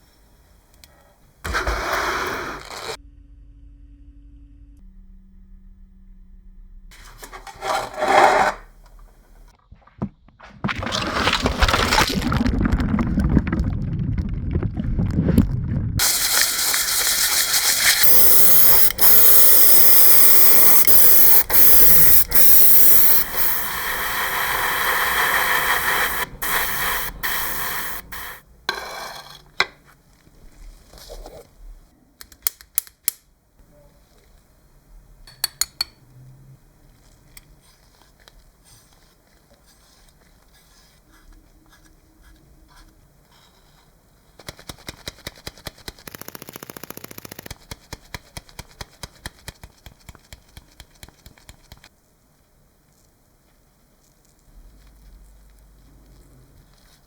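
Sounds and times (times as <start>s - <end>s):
low rumbling noise: 3.0s - 7.0s, 12.5s - 16.0s
pressurized spraying hiss: 16.0s - 28.4s.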